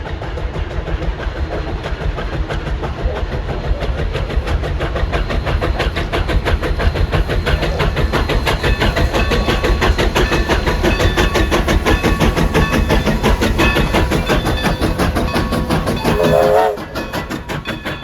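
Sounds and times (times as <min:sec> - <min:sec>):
steam locomotive running past: 0:00.0 - 0:18.0
short high-pitched tones: 0:16.1 - 0:16.8.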